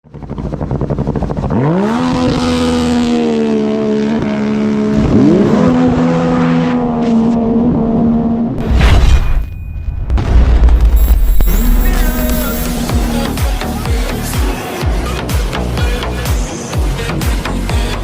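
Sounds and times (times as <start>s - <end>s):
jet ski engine accelerating: 0.1s - 8.6s
heavy boom: 8.6s - 13.3s.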